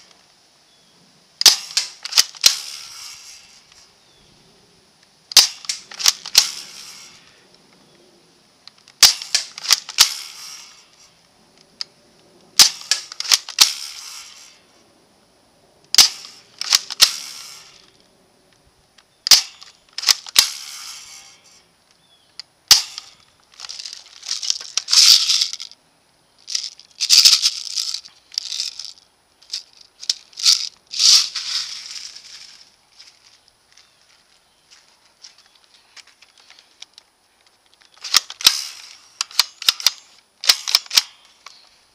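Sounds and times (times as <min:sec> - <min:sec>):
airsoft rifle shots: 0:01.4 - 0:03.2, 0:05.3 - 0:07.2, 0:09.0 - 0:10.8, 0:12.6 - 0:14.4, 0:16.0 - 0:17.8, 0:19.3 - 0:21.3, 0:22.7 - 0:23.2, 0:38.0 - 0:41.2
rattling handling noise: 0:22.9 - 0:25.8.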